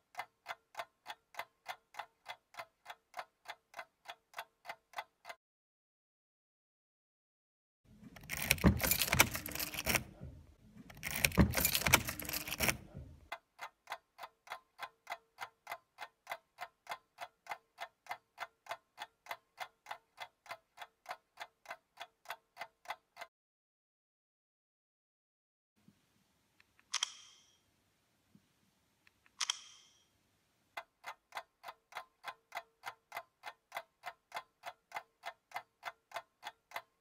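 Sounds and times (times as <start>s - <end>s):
clock ticking: 0.0s - 5.4s, 11.1s - 23.3s, 30.8s - 37.0s.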